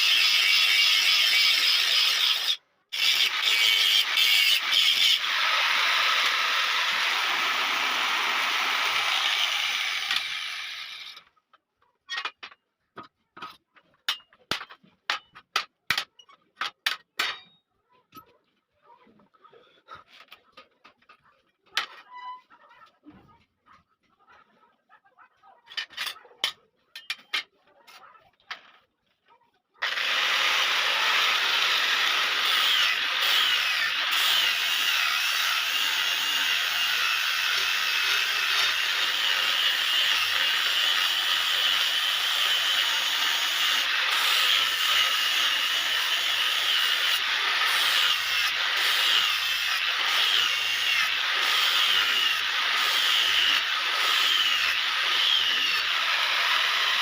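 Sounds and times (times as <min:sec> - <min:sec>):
power tool running against iron: 0:00.0 - 0:11.2, 0:29.8 - 0:57.0.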